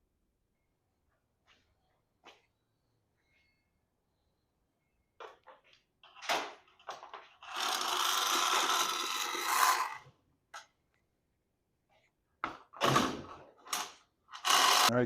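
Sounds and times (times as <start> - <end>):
knocks and rustles of parts: 5.2 - 10.7
long scraping rub: 7.7 - 10.0.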